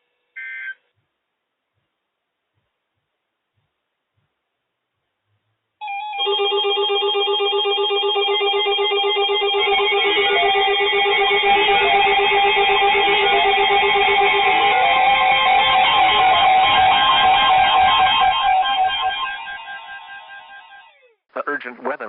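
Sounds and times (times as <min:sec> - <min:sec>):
fast electronic tones: 0:05.8 - 0:21.2.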